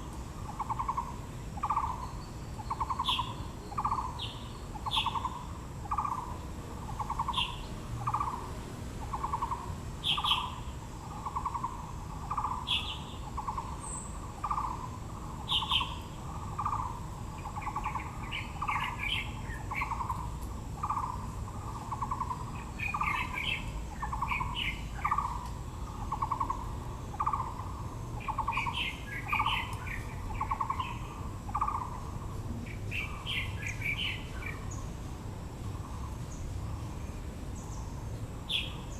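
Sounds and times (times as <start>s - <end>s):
birds chirping and twittering: 0.0s - 38.9s.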